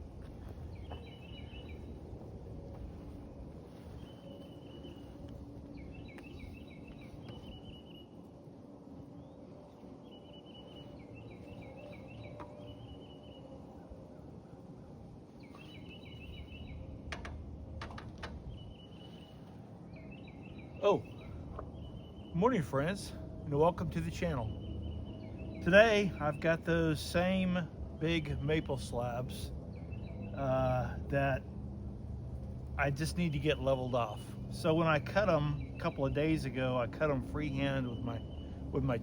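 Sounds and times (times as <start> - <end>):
low outdoor background rumble: 0.0 - 39.0
songbird singing: 0.0 - 39.0.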